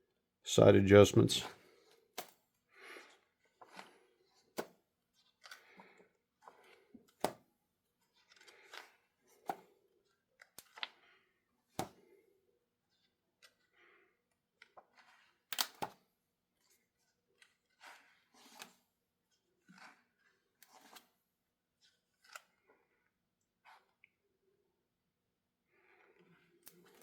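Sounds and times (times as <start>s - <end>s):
book pages turning: 1.5s - 12.0s, 14.5s - 22.7s.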